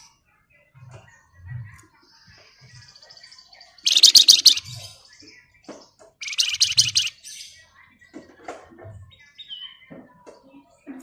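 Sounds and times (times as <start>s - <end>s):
faint short bird calls: 3.8s - 4.8s, 6.2s - 7.1s
songbird rattling trills: 3.8s - 4.9s, 6.2s - 7.1s.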